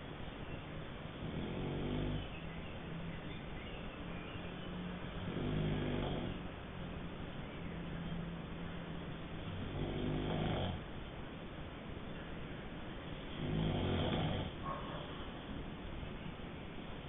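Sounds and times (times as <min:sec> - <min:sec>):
steady low hum: 0:00.0 - 0:17.0
snoring: 0:01.2 - 0:02.3, 0:05.2 - 0:06.5, 0:09.5 - 0:10.8, 0:13.4 - 0:14.6.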